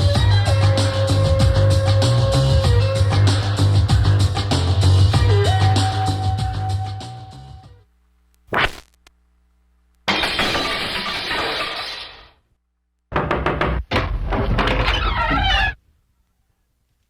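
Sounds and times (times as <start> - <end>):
loud breaking crash: 10.1 - 12.4.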